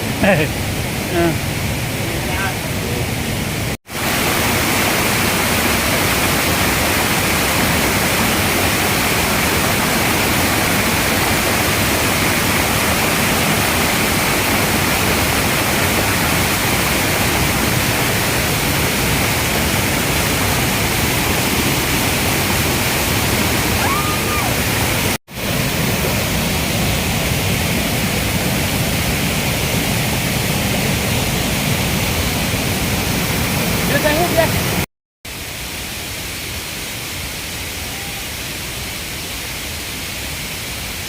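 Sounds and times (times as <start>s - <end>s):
waterfall roaring: 0.0s - 41.0s.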